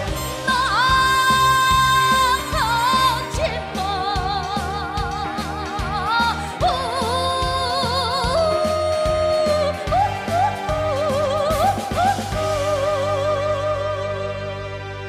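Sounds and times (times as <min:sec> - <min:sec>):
band accompaniment with drum beat: 0:00.0 - 0:13.4
woman singing with vibrato: 0:00.0 - 0:14.6.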